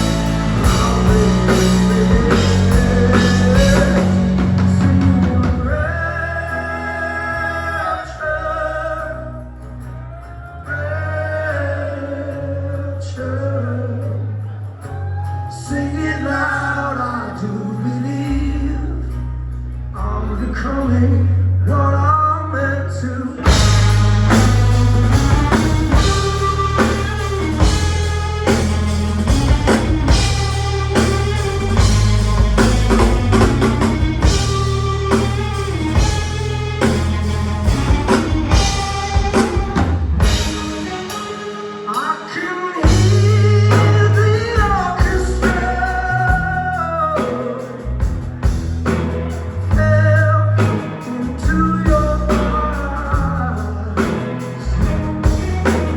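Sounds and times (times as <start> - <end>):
drums: 0.0 - 6.9, 23.4 - 55.9
person singing: 0.0 - 9.5, 20.0 - 37.0, 37.7 - 48.2, 49.6 - 55.9
electric guitar: 0.0 - 10.5, 23.2 - 55.9
bass and keyboard notes: 0.0 - 55.9.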